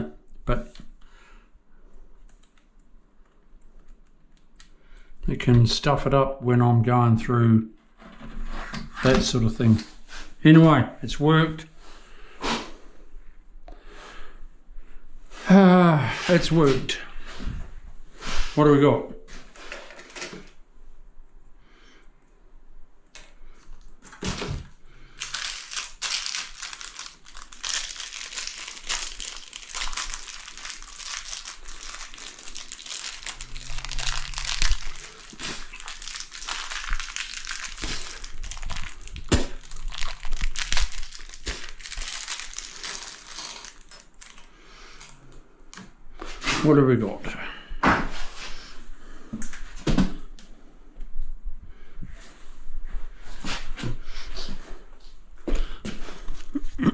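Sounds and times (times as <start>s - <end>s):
plastic packaging crinkling: 25.2s - 45.2s.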